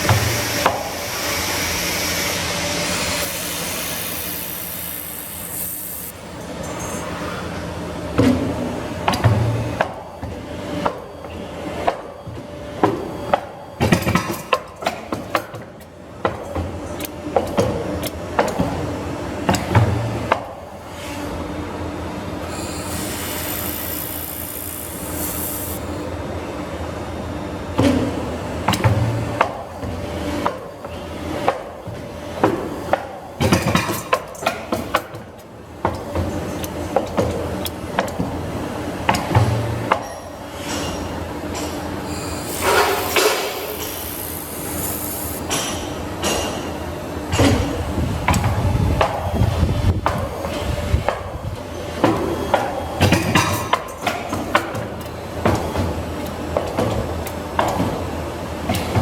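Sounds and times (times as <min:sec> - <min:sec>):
machine hum: 0:00.0 - 0:06.6, 0:22.2 - 0:26.2, 0:41.6 - 0:45.5
machine hiss: 0:00.0 - 0:07.4, 0:22.3 - 0:26.2, 0:41.6 - 0:45.8.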